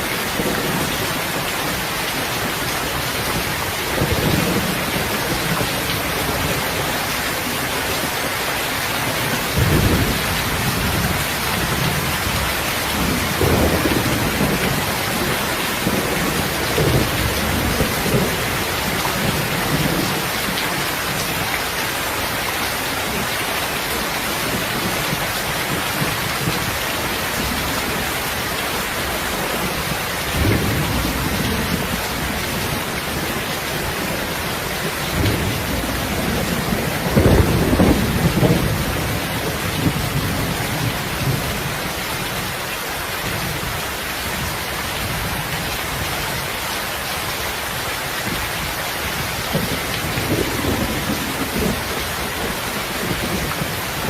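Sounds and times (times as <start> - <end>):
steady rain: 0.0 - 54.0
thunder rumbling: 9.1 - 21.4, 29.0 - 42.0.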